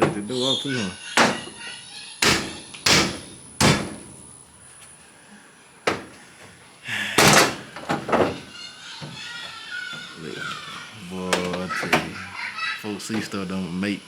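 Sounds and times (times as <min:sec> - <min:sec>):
sharp knocks and bangs: 0:01.2 - 0:01.6, 0:02.2 - 0:04.2, 0:07.2 - 0:08.3.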